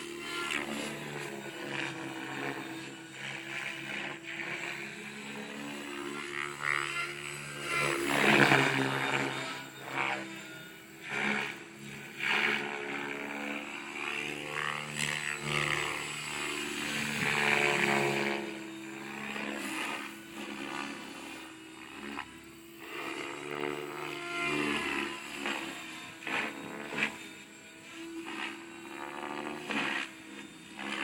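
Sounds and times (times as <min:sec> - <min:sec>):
rc helicopter rotor whine: 0:00.0 - 0:31.0.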